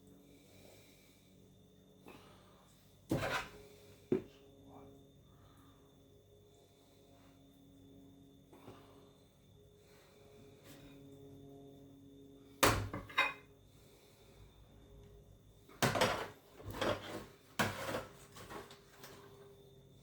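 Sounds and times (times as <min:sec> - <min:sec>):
dishes and utensils clattering: 0:13.0 - 0:13.5.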